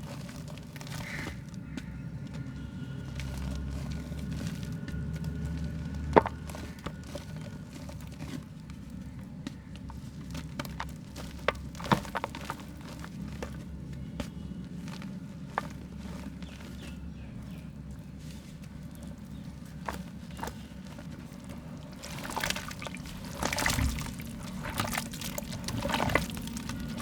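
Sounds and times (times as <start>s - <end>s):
dried mud crumbling and cracking: 0.0s - 27.0s
steady low hum: 17.1s - 27.0s.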